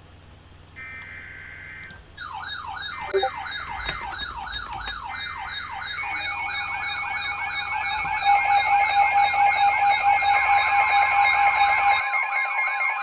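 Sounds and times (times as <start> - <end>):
electronic siren wailing: 0.8 - 13.0
steady attention tone: 3.1 - 3.4.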